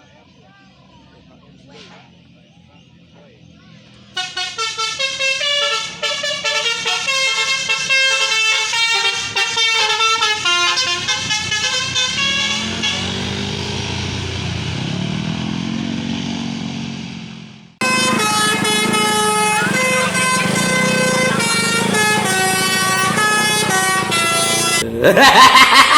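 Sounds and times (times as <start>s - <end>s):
engine revving: 0.0s - 24.9s
musical air horn melody: 4.2s - 14.2s, 17.8s - 24.8s.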